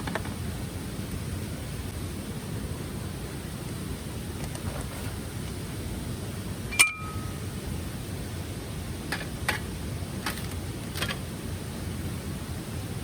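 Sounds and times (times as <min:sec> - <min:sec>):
sharp metallic clink: 0:06.7 - 0:07.4.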